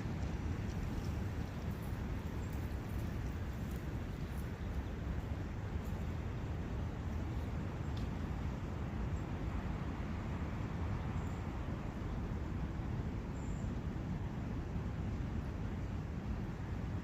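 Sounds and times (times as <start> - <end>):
brook running: 0.0 - 9.4.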